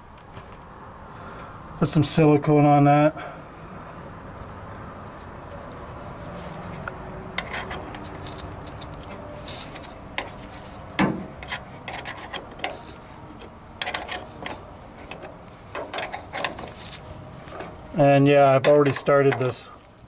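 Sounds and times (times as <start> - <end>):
hands rubbing and scraping: 5.1 - 17.7.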